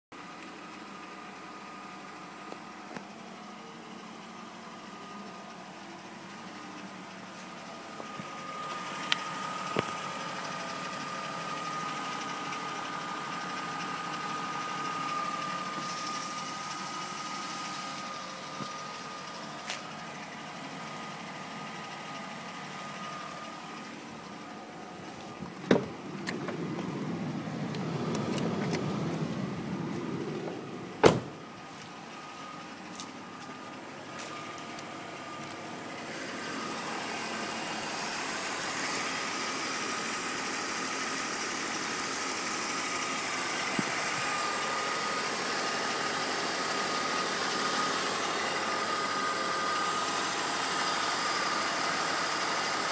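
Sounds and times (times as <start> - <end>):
car engine idling: 0.2 - 52.9
sharp engine knocks: 25.4 - 27.0, 29.9 - 31.4.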